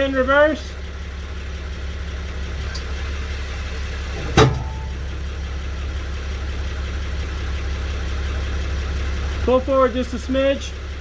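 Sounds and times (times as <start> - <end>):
van idling: 0.0 - 11.0
sharp driveline clunk: 4.0 - 5.8.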